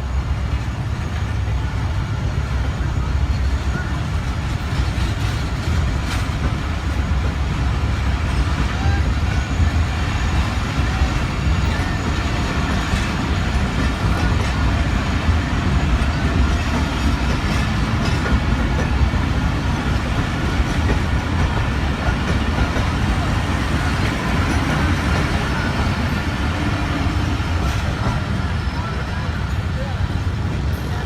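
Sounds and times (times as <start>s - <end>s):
train rumbling: 0.0s - 31.0s.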